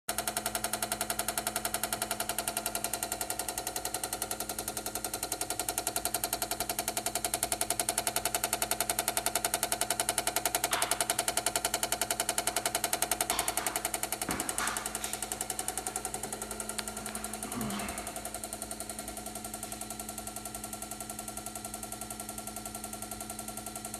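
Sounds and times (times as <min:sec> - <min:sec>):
garage door opener clicking: 0:00.2 - 0:23.4
steady hum: 0:10.4 - 0:21.3.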